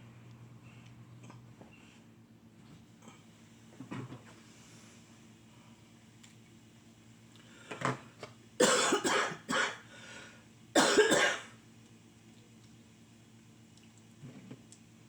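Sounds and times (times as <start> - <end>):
person coughing: 8.6 - 9.8, 10.8 - 11.6.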